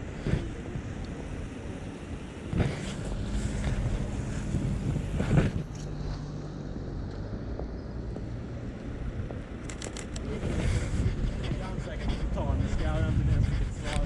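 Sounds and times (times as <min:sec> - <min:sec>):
wind on microphone: 0:00.0 - 0:05.7, 0:08.9 - 0:14.0
low rumble of traffic: 0:00.0 - 0:14.0.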